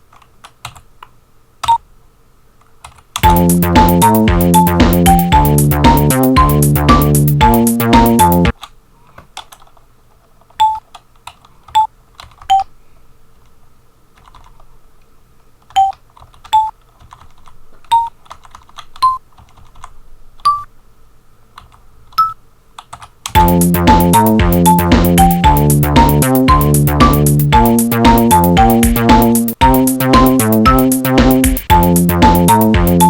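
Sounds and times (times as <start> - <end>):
chiptune tracker music: 3.2 - 8.5, 23.4 - 33.0
short sampled notes: 3.2 - 8.5, 23.4 - 33.0.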